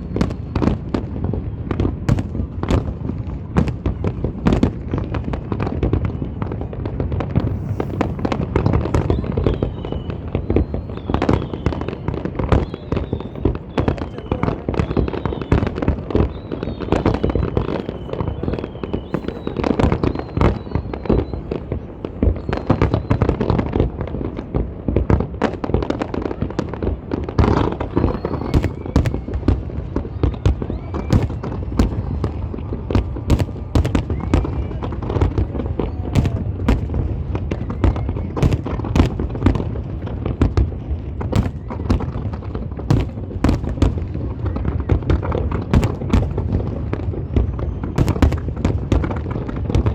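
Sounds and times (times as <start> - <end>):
fireworks bangs and crackles: 0.0 - 49.9
low rumble of shells bursting: 6.4 - 21.5.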